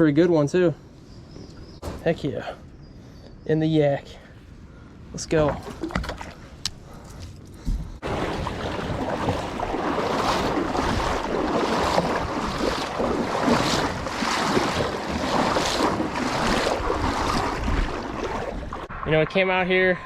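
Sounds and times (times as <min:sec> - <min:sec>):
wind buffeting microphone: 0:04.6 - 0:20.0
water sloshing around kayak: 0:05.3 - 0:19.1.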